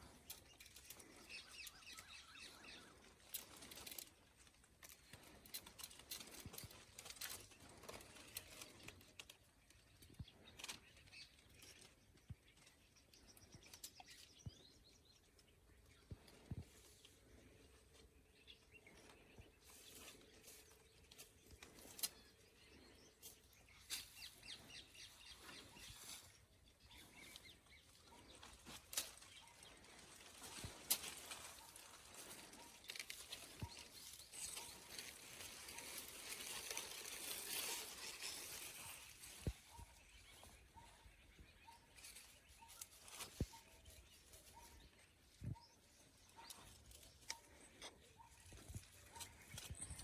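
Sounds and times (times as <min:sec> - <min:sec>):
scattered clicks and rustles: 0:02.9 - 0:14.4.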